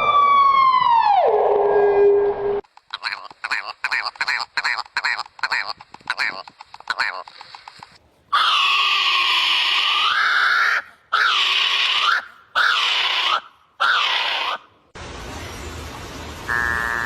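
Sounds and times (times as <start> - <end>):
bird giving harsh calls: 8.3 - 14.6.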